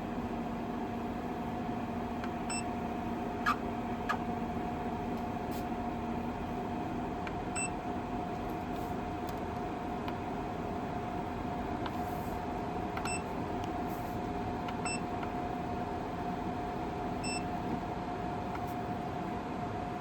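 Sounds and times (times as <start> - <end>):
air conditioner humming: 0.0 - 20.0.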